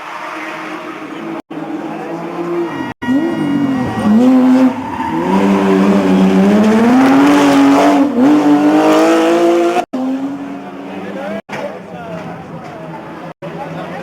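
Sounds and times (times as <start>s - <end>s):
car engine revving hard: 1.8s - 11.4s.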